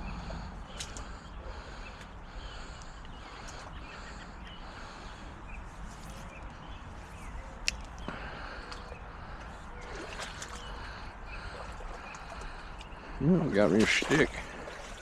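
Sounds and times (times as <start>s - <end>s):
creek water rushing: 8.2s - 15.0s.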